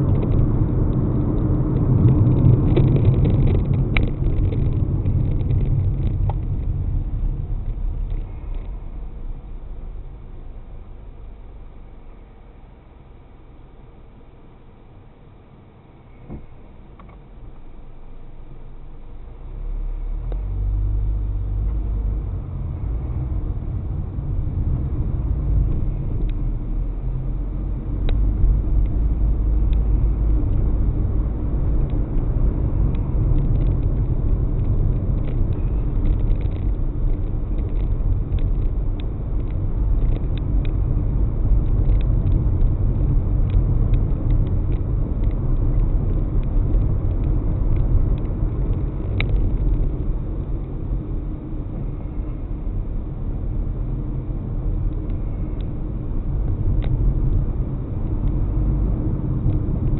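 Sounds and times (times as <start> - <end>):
car road and engine rumble: 0.0 - 59.9
light ticks: 32.8 - 40.8, 41.5 - 50.0.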